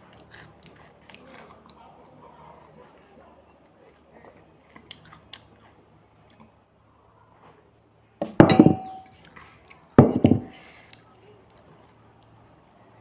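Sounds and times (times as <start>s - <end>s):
dishes clinking and clattering: 8.2s - 9.1s, 10.0s - 10.5s.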